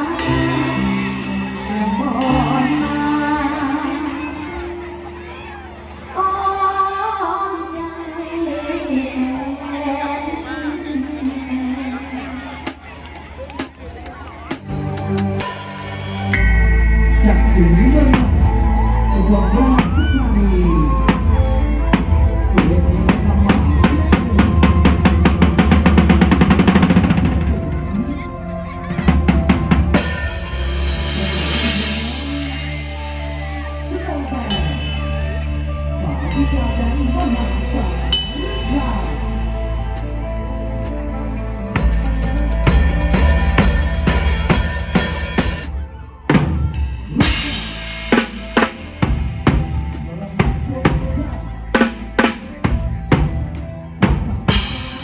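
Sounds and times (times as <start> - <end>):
drum kit playing: 12.7 - 28.0, 28.9 - 33.7, 41.7 - 55.0
band accent hits: 13.6 - 36.5, 41.7 - 55.0
steady bass line: 13.6 - 55.0
fast drum roll: 22.0 - 27.7.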